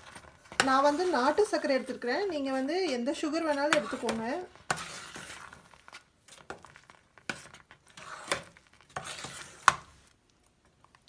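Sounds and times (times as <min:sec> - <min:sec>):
spoon scraping and tapping pan: 0:00.0 - 0:02.0, 0:02.8 - 0:05.6, 0:06.3 - 0:10.0.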